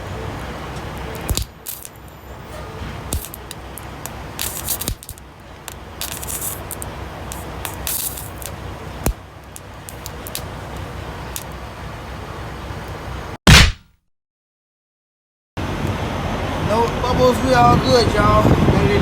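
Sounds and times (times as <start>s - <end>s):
air hissing bursts: 0.0s - 11.7s
steady low rumble: 0.0s - 13.4s
sharp clicks and scrapes: 0.8s - 11.6s.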